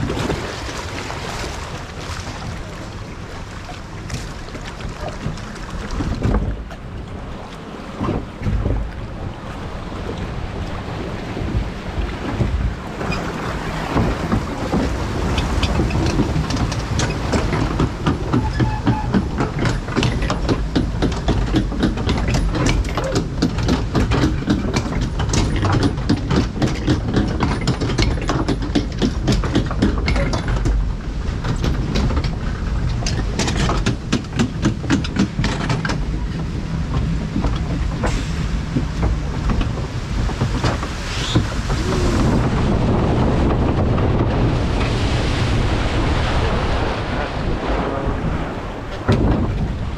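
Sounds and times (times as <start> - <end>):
low rumble: 36.0 - 49.9.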